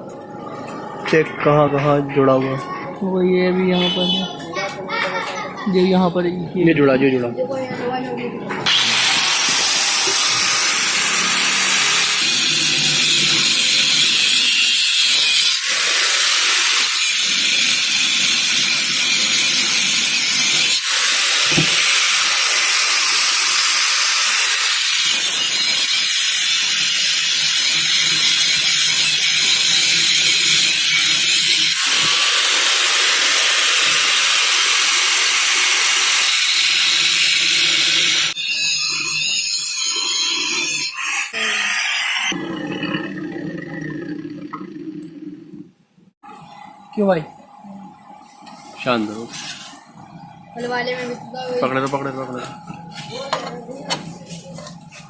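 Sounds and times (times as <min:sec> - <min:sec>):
angle grinder cutting steel: 0:08.6 - 0:44.8.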